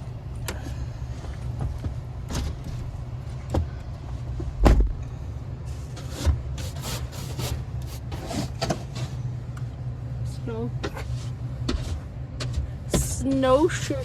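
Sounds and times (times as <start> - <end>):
rustling scraping strokes: 6.6 - 8.7.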